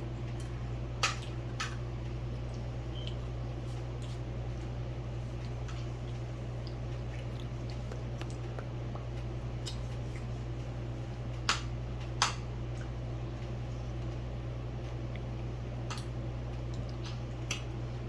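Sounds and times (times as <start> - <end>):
steady low hum: 0.0 - 18.0
person chewing: 0.3 - 10.4.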